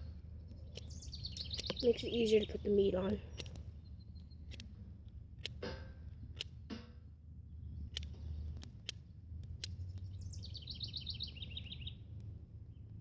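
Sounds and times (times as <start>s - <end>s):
bird trilling: 0.7s - 4.5s.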